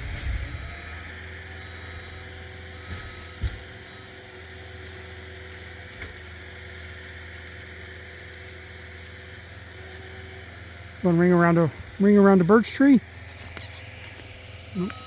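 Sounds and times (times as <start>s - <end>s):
distant skid steer droning: 0.0s - 15.0s.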